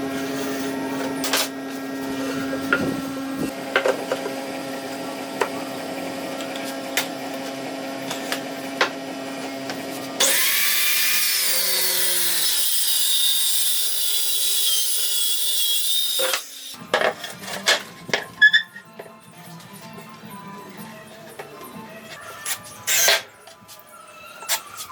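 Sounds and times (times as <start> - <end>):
power tool cutting wood: 10.2 - 16.8.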